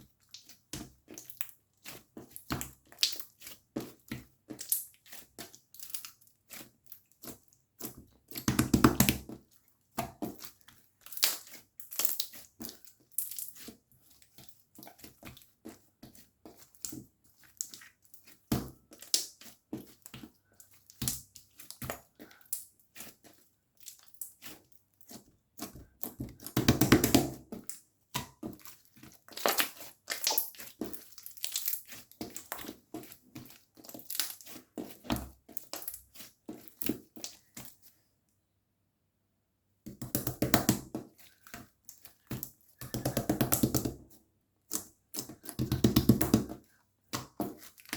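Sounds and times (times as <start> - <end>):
slime squelching: 0.0 - 38.1, 39.9 - 47.9
slime crackling and popping: 29.4 - 32.6.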